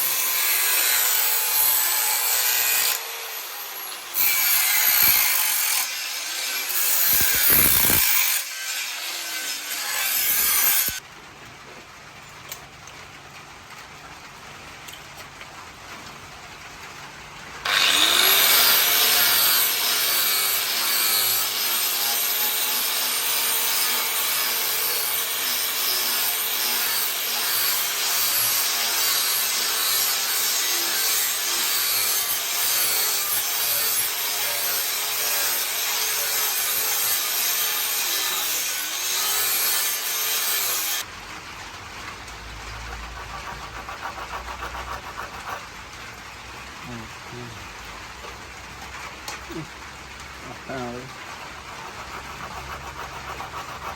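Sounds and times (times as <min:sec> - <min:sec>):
electric power tool grinding: 0:00.0 - 0:11.0, 0:17.6 - 0:41.1, 0:42.8 - 0:45.7, 0:50.6 - 0:53.9.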